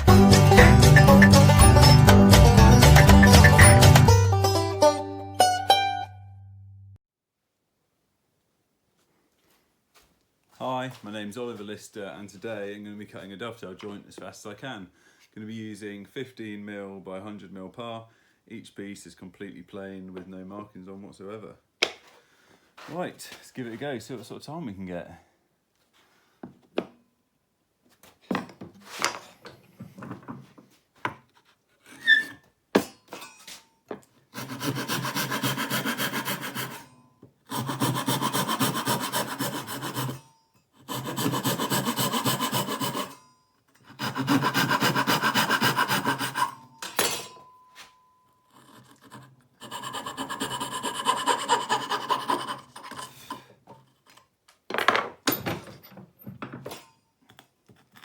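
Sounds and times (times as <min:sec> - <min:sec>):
hand saw cutting wood: 0:34.3 - 0:43.2, 0:43.8 - 0:46.8, 0:48.5 - 0:54.2.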